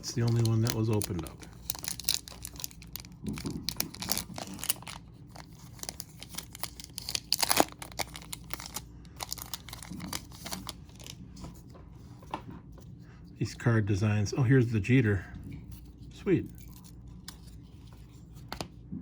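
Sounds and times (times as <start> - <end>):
foil wrapper crinkling and tearing: 0.0 - 11.2.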